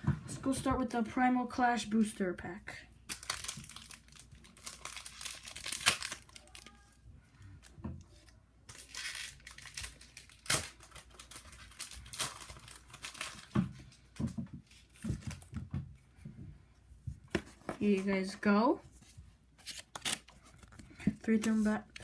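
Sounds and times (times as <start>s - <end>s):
foil wrapper tearing and crinkling: 3.1s - 6.8s, 8.7s - 13.6s, 19.6s - 20.8s.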